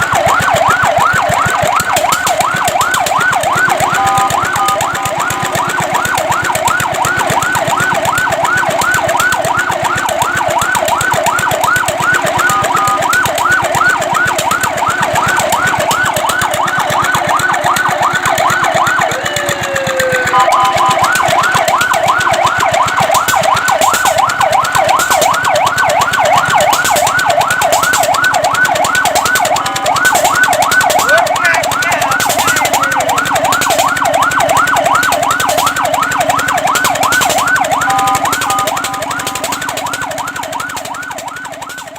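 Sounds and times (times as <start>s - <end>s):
fire truck siren yelping: 0.0s - 41.9s.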